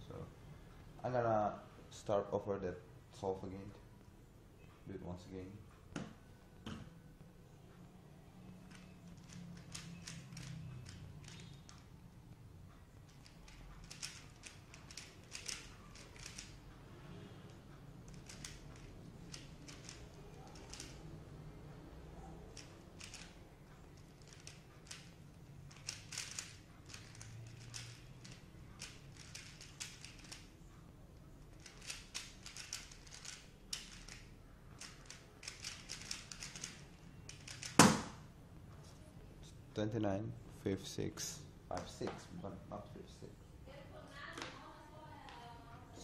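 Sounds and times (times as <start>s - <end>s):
puzzle cube plastic clicks: 8.7s - 11.8s, 13.1s - 16.6s, 18.0s - 21.1s, 22.6s - 23.3s, 24.0s - 25.1s, 25.7s - 30.5s, 31.5s - 37.9s
loud sharp knock: 37.8s - 38.2s.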